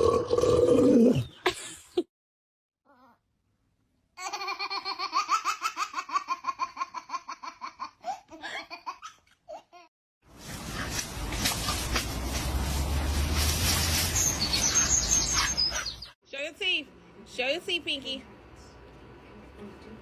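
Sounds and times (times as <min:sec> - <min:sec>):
person giggling: 0:01.4 - 0:02.1.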